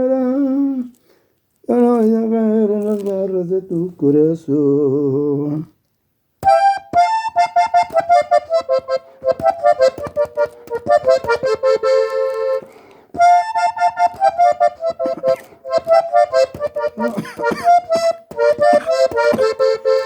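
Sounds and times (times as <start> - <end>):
button accordion playing melody: 6.4 - 20.0.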